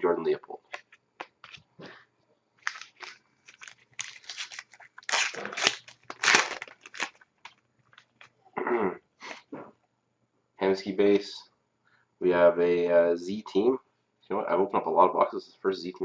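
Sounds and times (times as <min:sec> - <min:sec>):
foil wrapper crinkling and tearing: 0:02.6 - 0:08.3.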